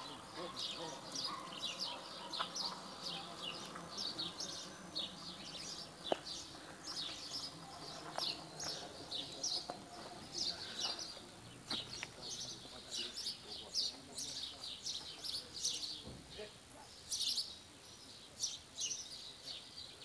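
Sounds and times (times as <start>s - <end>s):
small birds chirping: 0.0s - 20.0s.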